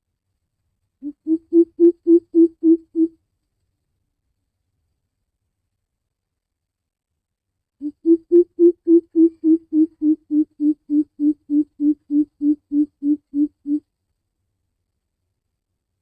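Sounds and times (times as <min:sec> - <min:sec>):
bird booming hoot call: 0:07.8 - 0:13.8.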